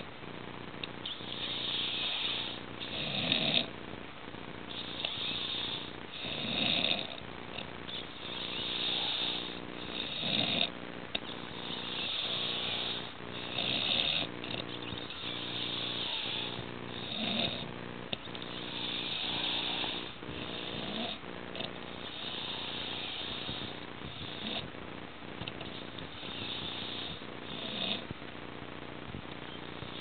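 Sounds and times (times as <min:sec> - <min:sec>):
man snoring loudly: 0:01.1 - 0:03.7, 0:04.9 - 0:07.2, 0:08.2 - 0:10.7, 0:11.4 - 0:17.7, 0:18.5 - 0:24.7, 0:25.6 - 0:28.1.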